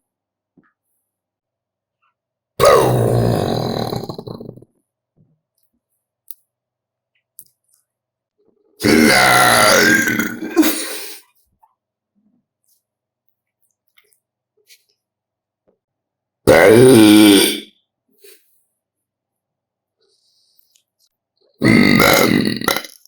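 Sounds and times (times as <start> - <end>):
loud burps: 2.6 - 4.7, 8.8 - 10.8, 16.5 - 17.7, 21.6 - 23.0.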